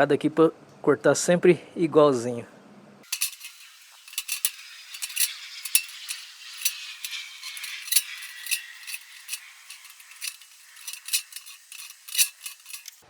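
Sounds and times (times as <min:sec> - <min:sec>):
faint metallic ring: 0:03.1 - 0:13.0
shears snipping metal pipe: 0:03.1 - 0:13.0.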